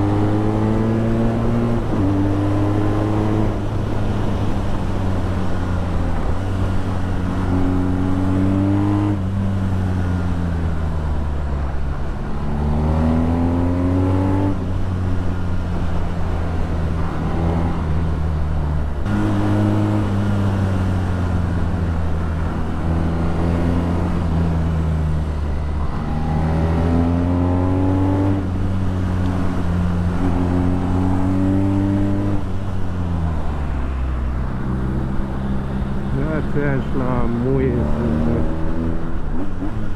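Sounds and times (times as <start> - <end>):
motorcycle engine accelerating: 18.8 - 32.8, 34.5 - 39.9.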